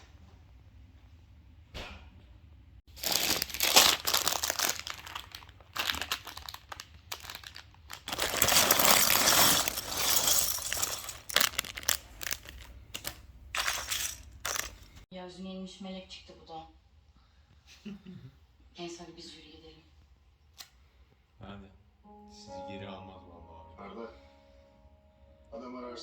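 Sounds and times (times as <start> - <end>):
plastic bags crinkling and tearing: 2.9 - 15.0.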